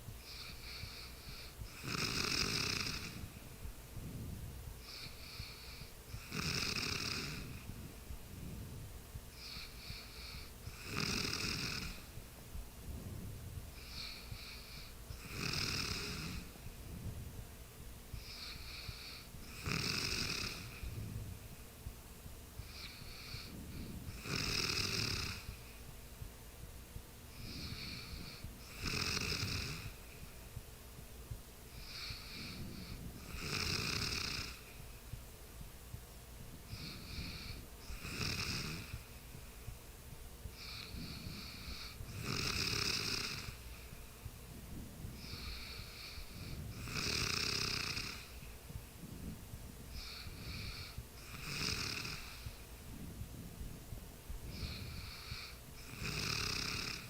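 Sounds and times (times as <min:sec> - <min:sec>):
faint breath sound: 0:00.0 - 0:26.4, 0:27.2 - 0:30.6, 0:31.3 - 0:35.3, 0:36.0 - 0:57.0
person snoring: 0:00.2 - 0:03.3, 0:04.8 - 0:07.8, 0:09.4 - 0:12.1, 0:13.8 - 0:16.5, 0:18.2 - 0:21.2, 0:22.6 - 0:25.6, 0:27.4 - 0:30.0, 0:31.8 - 0:34.7, 0:36.7 - 0:39.1, 0:40.6 - 0:43.6, 0:45.2 - 0:48.4, 0:49.9 - 0:52.6, 0:54.5 - 0:57.0.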